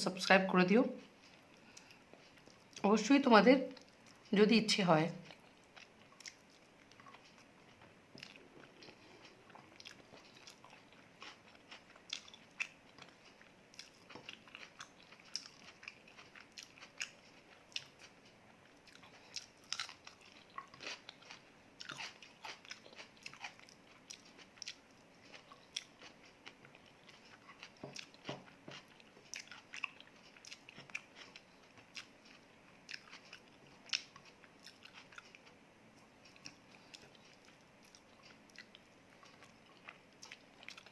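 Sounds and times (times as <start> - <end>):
crunchy chewing and biting: 5.3 - 35.6.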